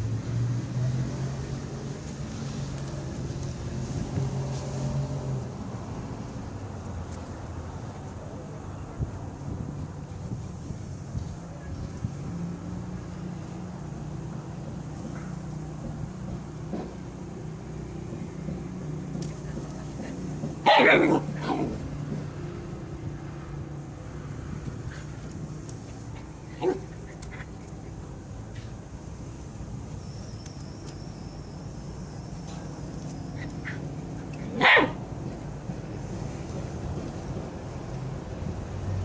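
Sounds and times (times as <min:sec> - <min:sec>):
puppy barking: 0:20.6 - 0:21.8, 0:26.5 - 0:27.5, 0:34.4 - 0:35.0
puppy yip: 0:20.7 - 0:21.8, 0:34.5 - 0:35.0.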